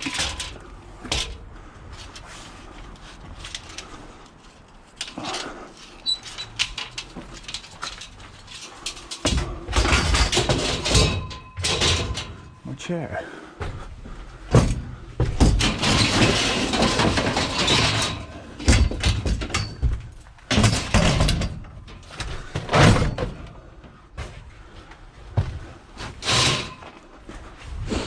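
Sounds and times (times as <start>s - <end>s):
clatter and rustling: 0.0s - 12.6s, 13.7s - 27.9s
scrap metal bangs and knocks: 6.1s - 12.6s, 14.4s - 24.4s, 25.3s - 27.0s.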